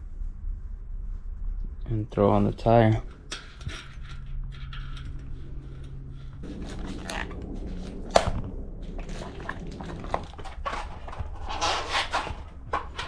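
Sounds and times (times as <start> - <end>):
tire rubber scraping on rim: 2.7 - 13.0.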